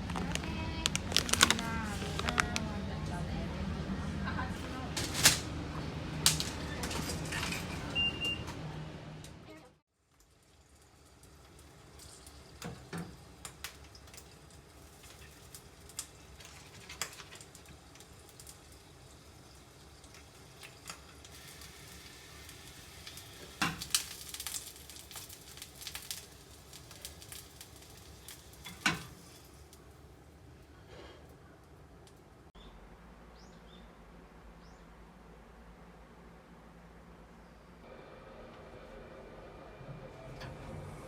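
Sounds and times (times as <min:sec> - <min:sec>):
metal utensils and dishes clinking: 0:06.3 - 0:08.0
food sizzling on hot surface: 0:10.4 - 0:30.1.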